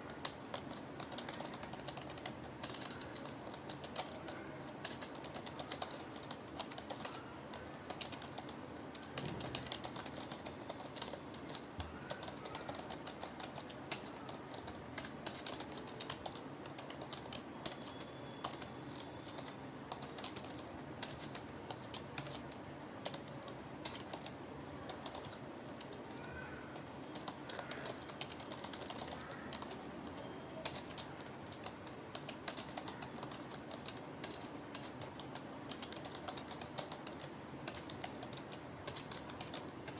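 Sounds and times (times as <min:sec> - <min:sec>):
keyboard typing clicks: 0:00.1 - 0:39.9.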